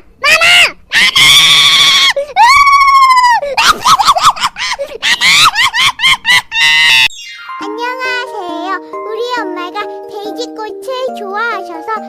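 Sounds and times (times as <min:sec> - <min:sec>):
child's voice ringtone screaming: 0:07.1 - 0:09.6.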